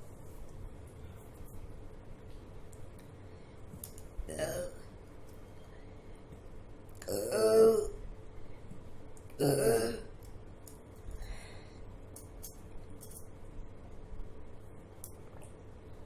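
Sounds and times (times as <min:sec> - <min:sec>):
woman burping loudly: 0:09.4 - 0:10.1.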